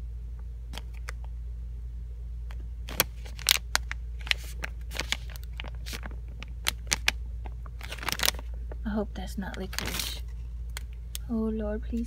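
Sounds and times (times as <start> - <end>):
steady low hum: 0.0 - 12.0
plastic packet crinkling: 0.8 - 1.2, 2.8 - 11.0.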